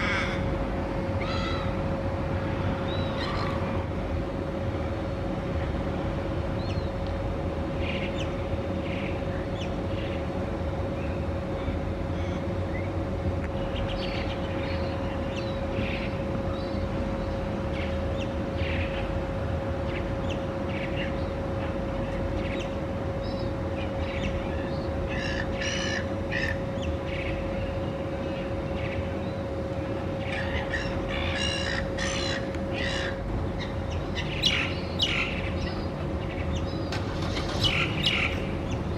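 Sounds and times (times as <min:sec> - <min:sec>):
ravens cawing: 0:00.0 - 0:00.6, 0:01.2 - 0:01.9, 0:25.1 - 0:26.6, 0:30.3 - 0:33.2
steady hum: 0:00.0 - 0:38.9
other bird calls: 0:02.9 - 0:03.6, 0:30.2 - 0:38.9.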